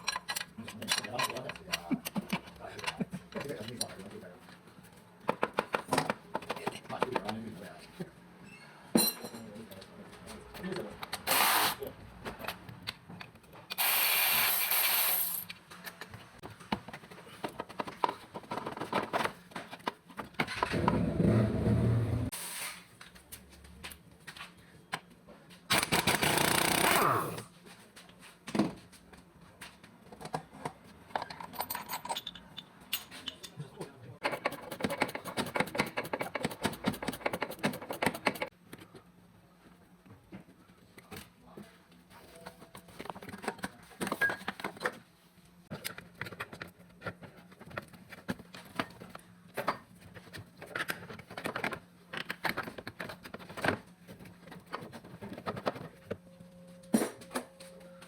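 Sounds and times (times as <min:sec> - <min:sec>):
tools clinking on metal: 0:00.0 - 0:03.9.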